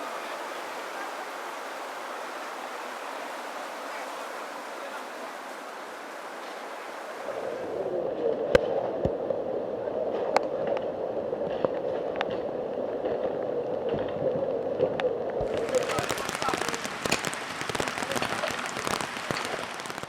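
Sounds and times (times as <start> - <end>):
floodwater rushing: 0.0 - 20.0.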